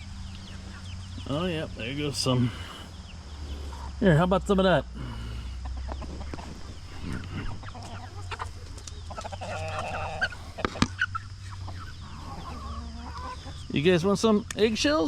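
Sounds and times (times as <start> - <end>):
chickens clucking: 0.0 - 15.0
chicken pitched call: 5.6 - 13.7.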